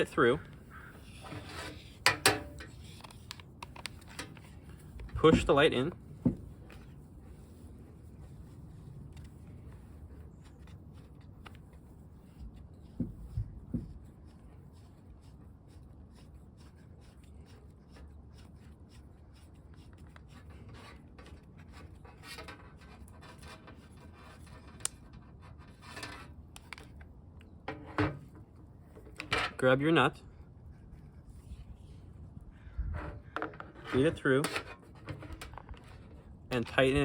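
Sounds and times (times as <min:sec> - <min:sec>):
scratchy rubbing: 0:00.0 - 0:03.3.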